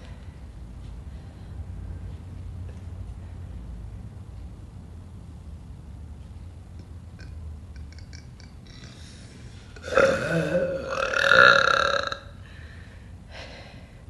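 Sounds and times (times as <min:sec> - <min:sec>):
woman burping: 0:09.8 - 0:12.3.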